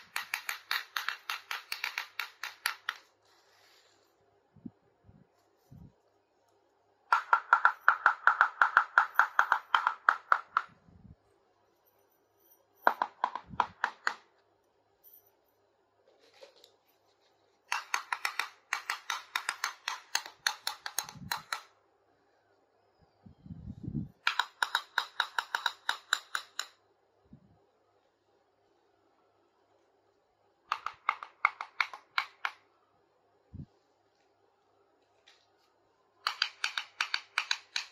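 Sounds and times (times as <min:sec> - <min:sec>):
plastic toy pieces clicking: 0:00.0 - 0:03.1, 0:17.7 - 0:21.7, 0:24.2 - 0:26.8, 0:36.2 - 0:37.9.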